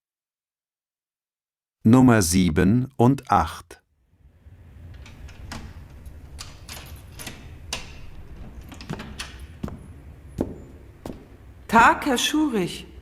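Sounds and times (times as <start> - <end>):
light clicks and knocks: 4.9 - 11.5.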